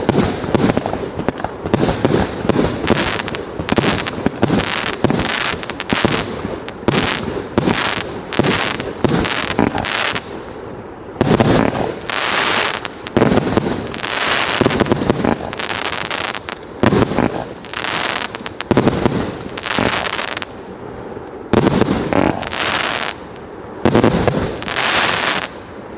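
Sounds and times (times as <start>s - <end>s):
wind gusting against microphone: 0.0s - 25.9s.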